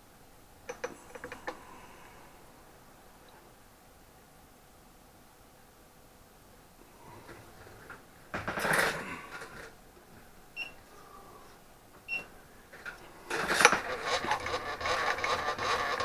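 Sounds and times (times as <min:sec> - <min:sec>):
workshop handling noise: 0:07.6 - 0:09.8, 0:12.8 - 0:16.0
machine tool motor humming: 0:13.3 - 0:16.0.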